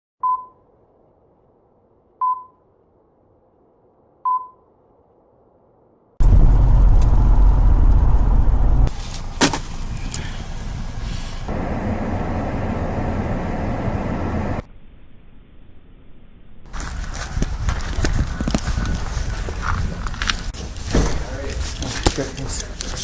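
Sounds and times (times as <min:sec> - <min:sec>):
short electronic beeps: 0:00.2 - 0:00.7, 0:02.2 - 0:02.6, 0:04.3 - 0:04.7
loud low rumble: 0:05.7 - 0:09.0.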